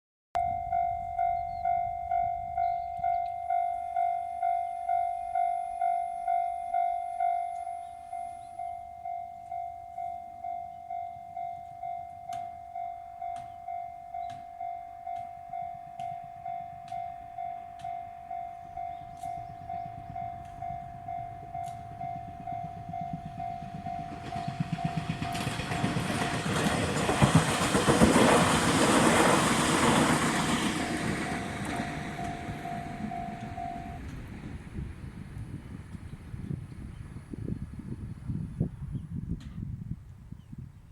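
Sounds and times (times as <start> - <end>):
level crossing alarm beeping: 0.4 - 27.6, 29.6 - 34.3
train passing: 0.4 - 39.4.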